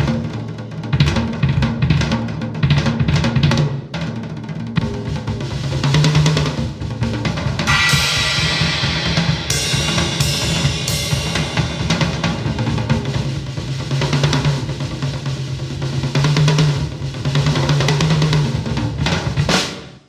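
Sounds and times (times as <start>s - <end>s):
busy drum kit: 0.0s - 20.0s
cymbal crashes: 7.6s - 14.8s.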